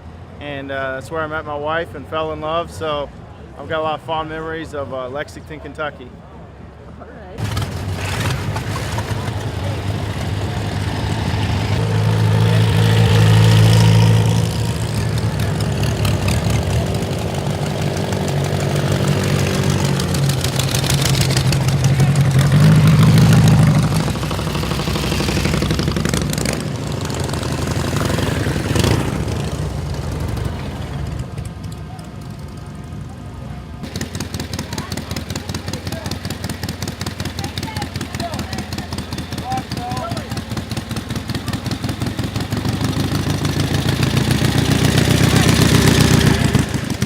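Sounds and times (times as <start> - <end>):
motorcycle engines passing: 7.4 - 47.0
murmur of voices: 31.8 - 42.0.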